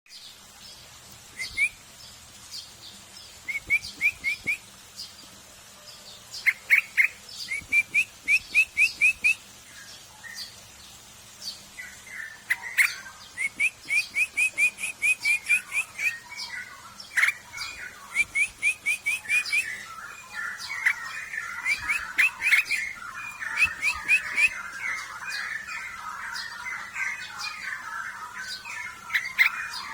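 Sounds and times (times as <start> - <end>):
bulbul rising chirps: 17.2 - 25.4.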